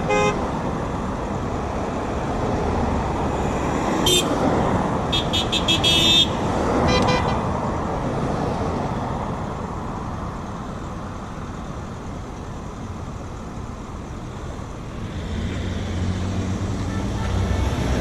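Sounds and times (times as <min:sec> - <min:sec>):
car horn toot: 0:00.0 - 0:00.4, 0:04.0 - 0:04.3, 0:05.1 - 0:07.4, 0:16.8 - 0:17.8
traffic passing: 0:00.0 - 0:18.0
vehicle engine rumble: 0:00.0 - 0:18.0.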